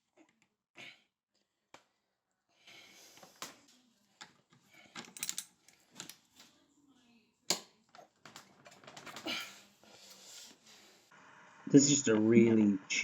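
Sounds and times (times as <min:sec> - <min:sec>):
tools clicking and tapping: 0:04.2 - 0:06.2.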